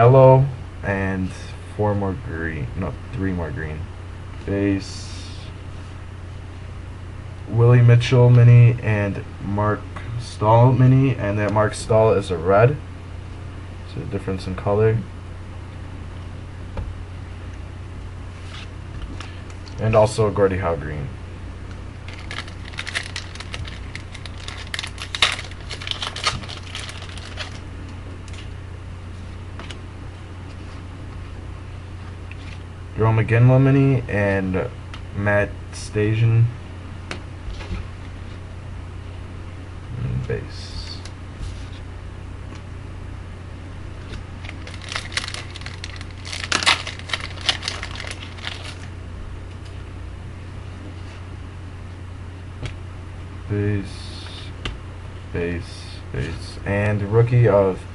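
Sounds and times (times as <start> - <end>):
low steady hum: 0.0 - 57.9
cards rustling and clicking: 22.1 - 27.6, 44.1 - 48.9
wrapper crinkling: 22.1 - 27.6, 44.4 - 48.9.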